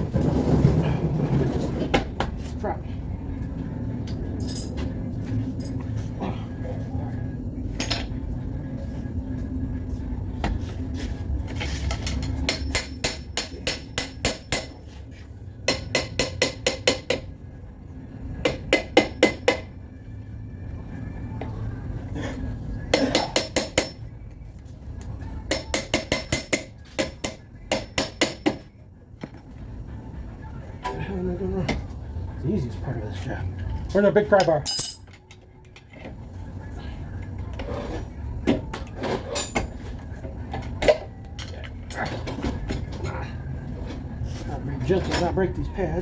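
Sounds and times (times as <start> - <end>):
steady low hum: 0.0 - 46.0
hammer striking steel: 12.5 - 14.8, 15.7 - 17.3, 22.9 - 24.0, 25.5 - 28.6.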